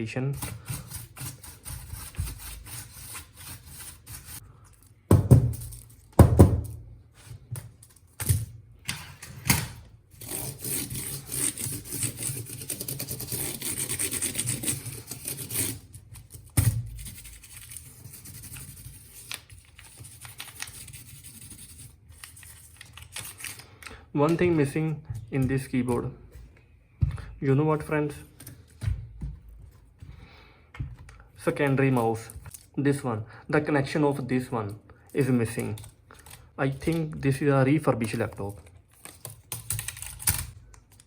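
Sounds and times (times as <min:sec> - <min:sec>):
rubbing and scratching: 0:00.4 - 0:04.4, 0:10.2 - 0:23.6.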